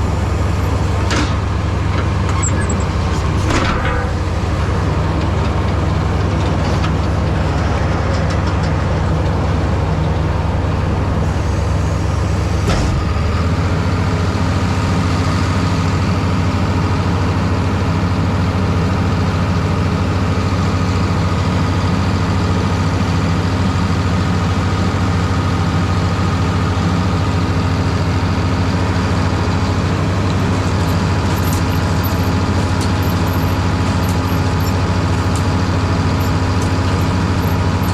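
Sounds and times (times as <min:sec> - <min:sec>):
machinery clunk: 0:00.0 - 0:13.6
diesel engine running: 0:00.0 - 0:37.9.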